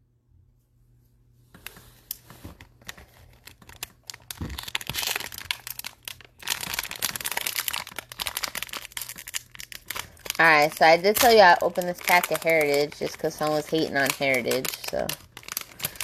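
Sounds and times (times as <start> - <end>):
plastic wrapper crinkling and tearing: 1.8 - 16.0.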